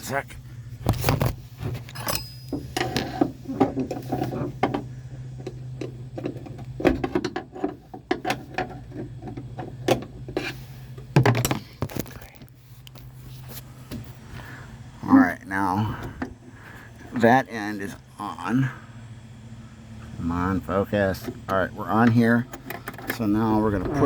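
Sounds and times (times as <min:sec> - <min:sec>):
steady low hum: 0:00.0 - 0:24.0
tools and metal parts clicking: 0:01.9 - 0:10.4, 0:22.0 - 0:23.4.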